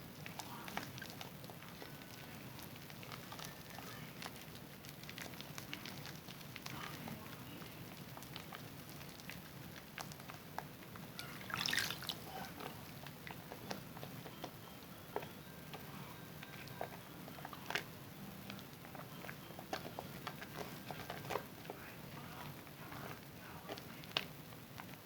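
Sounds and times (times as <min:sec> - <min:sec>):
water drips: 0:11.2 - 0:12.3
wet hands lathering soap: 0:11.3 - 0:12.8.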